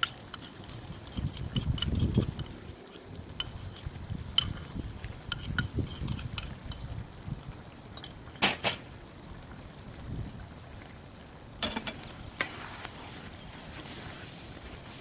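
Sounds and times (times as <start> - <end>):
metal utensils clinking on cookware: 0.0 - 6.9, 7.9 - 8.9, 11.6 - 12.0.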